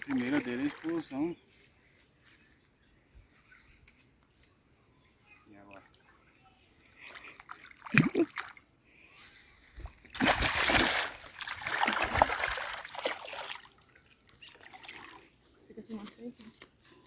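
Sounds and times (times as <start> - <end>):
fish splashing in water: 10.1 - 15.3.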